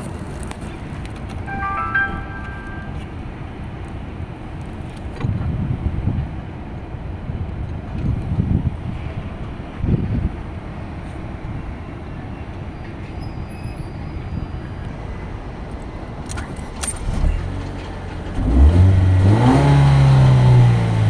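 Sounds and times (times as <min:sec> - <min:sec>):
car engine starting: 0:16.2 - 0:21.0.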